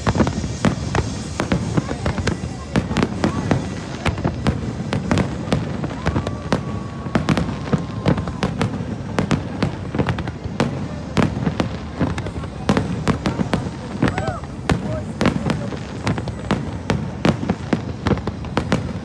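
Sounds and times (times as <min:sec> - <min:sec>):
firework whistle: 0:00.0 - 0:19.0
fireworks bangs and crackles: 0:00.0 - 0:19.0.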